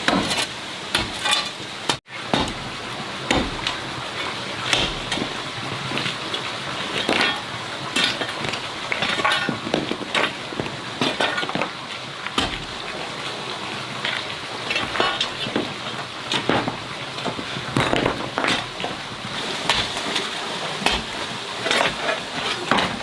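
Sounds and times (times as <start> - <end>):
utensil scraping and stirring: 17.2 - 23.0.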